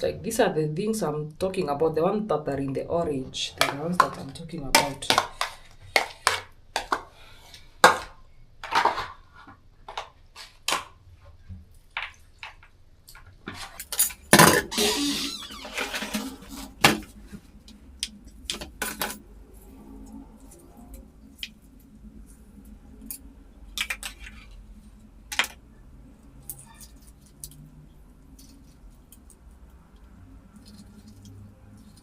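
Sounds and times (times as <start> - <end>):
scraping and rattling: 13.5 - 17.0.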